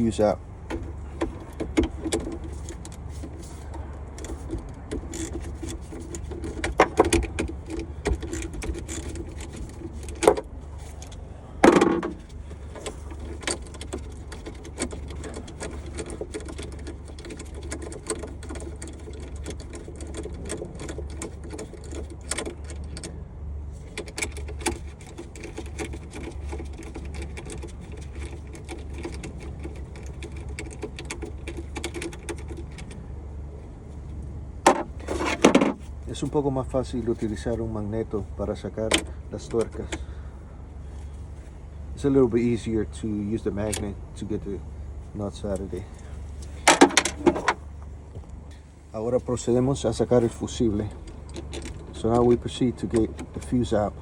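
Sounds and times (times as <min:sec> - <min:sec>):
steady low hum: 0:00.0 - 0:54.0
sharp metal knocks: 0:11.6 - 0:12.2, 0:34.6 - 0:35.9.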